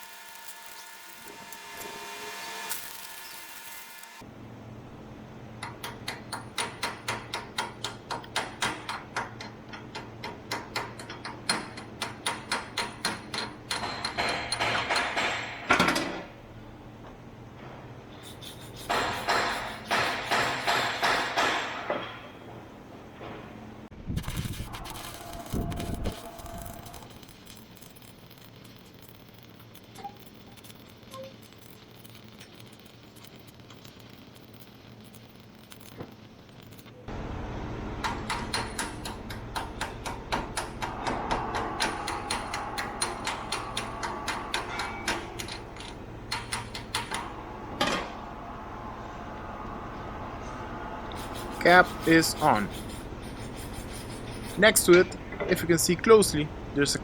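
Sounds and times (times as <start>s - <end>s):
welding arc crackle: 0.0s - 4.3s, 24.0s - 37.4s, 38.0s - 54.7s
rough scraping hiss: 40.6s - 55.0s.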